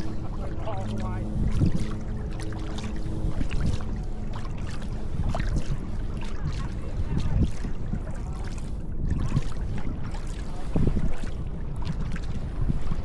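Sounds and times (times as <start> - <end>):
steady low rumble: 0.0 - 13.0
water splashing and dripping: 0.0 - 13.0.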